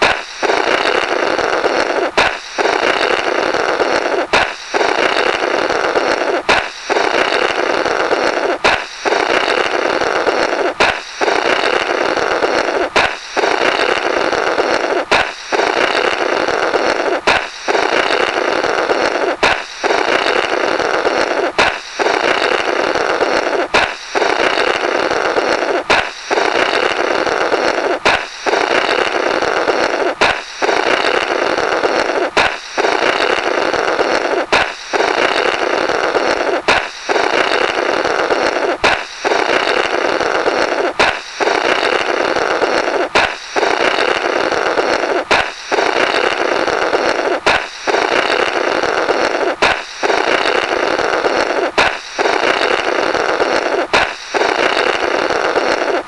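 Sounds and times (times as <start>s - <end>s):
balloon pop: 0.0s - 1.2s, 1.9s - 7.6s, 8.2s - 11.9s, 12.5s - 14.1s, 14.7s - 16.2s, 17.0s - 18.4s, 19.0s - 20.4s, 21.2s - 22.6s, 23.4s - 24.7s, 25.6s - 27.1s, 27.7s - 40.0s, 40.8s - 42.3s, 42.9s - 44.4s, 45.0s - 46.4s, 47.1s - 48.6s, 49.2s - 50.6s, 51.6s - 52.8s, 53.5s - 56.0s
fluttering balloon raspberry: 0.0s - 56.0s.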